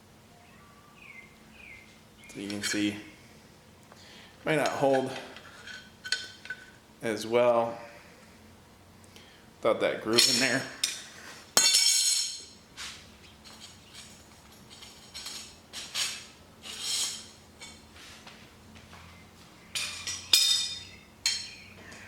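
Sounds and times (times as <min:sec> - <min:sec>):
metal tongs clinking on steel: 0:19.8 - 0:21.6.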